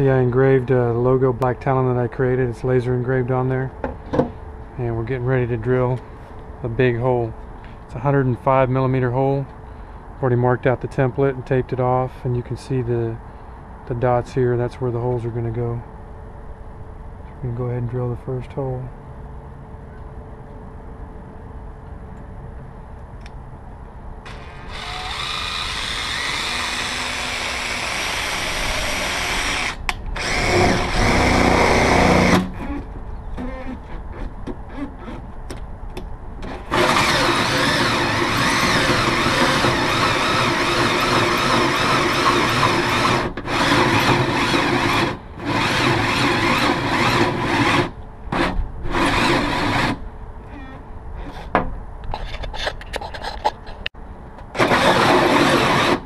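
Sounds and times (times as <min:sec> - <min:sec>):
electric drill boring into metal: 0:24.3 - 0:32.5, 0:36.5 - 0:50.0, 0:54.6 - 0:56.0.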